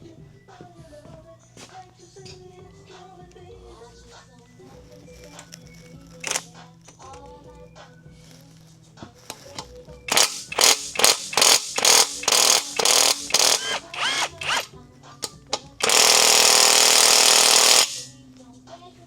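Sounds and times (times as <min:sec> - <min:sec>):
impact wrench hammering: 0:06.2 - 0:06.4, 0:10.1 - 0:14.7, 0:15.6 - 0:18.1.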